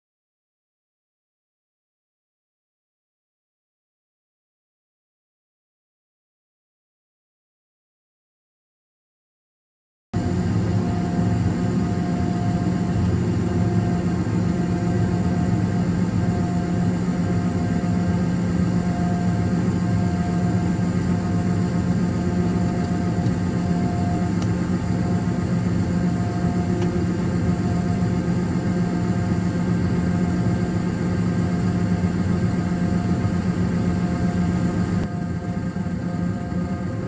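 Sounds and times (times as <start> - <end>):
combine harvester droning: 10.2 - 37.0
faint steady whine: 10.2 - 37.0.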